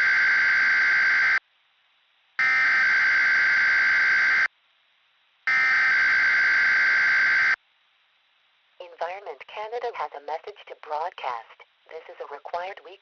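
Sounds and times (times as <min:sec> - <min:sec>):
harsh digital data tones: 0:05.5 - 0:07.6.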